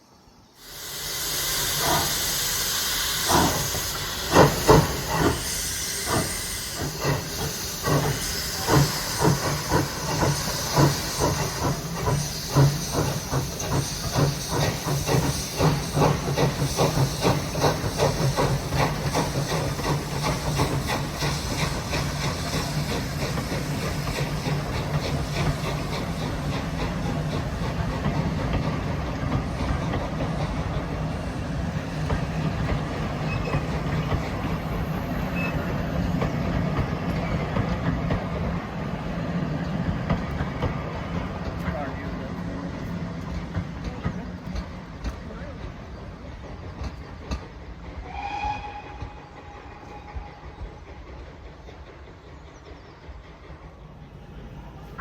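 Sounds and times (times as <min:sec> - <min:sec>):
steam hissing: 0:00.0 - 0:55.0
steam locomotive exhaust chuffs: 0:00.5 - 0:55.0.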